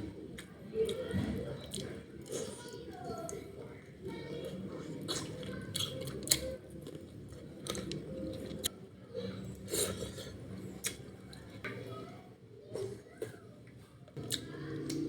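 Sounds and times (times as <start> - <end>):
chewing food: 4.4 - 8.7.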